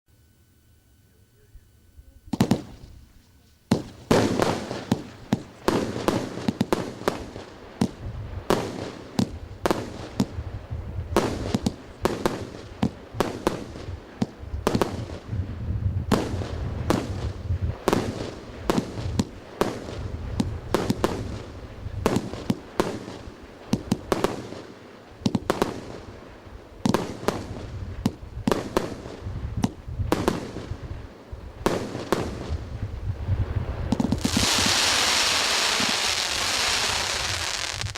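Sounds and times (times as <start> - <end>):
firework battery bangs: 2.3 - 3.1, 3.7 - 10.4, 33.9 - 37.9.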